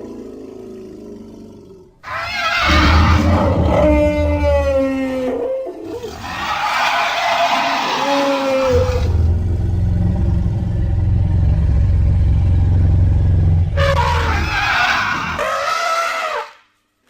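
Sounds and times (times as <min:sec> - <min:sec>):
low rumbling growl: 0:00.0 - 0:06.8, 0:08.1 - 0:15.4
creature roar: 0:00.0 - 0:10.4
high screeching roar: 0:02.0 - 0:10.4, 0:13.4 - 0:16.6.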